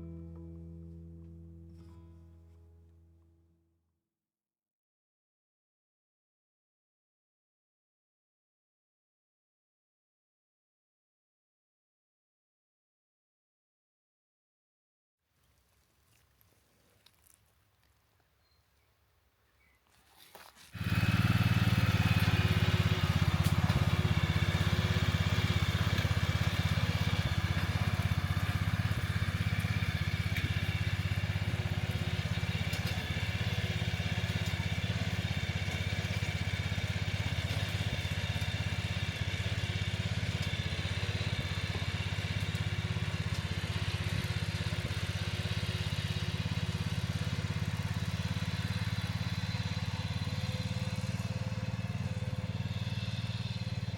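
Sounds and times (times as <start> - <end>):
engine running steadily: 20.6 - 53.9.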